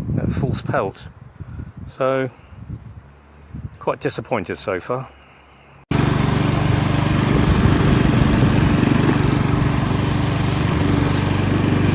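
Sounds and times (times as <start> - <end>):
lawnmower engine running: 5.9 - 11.9.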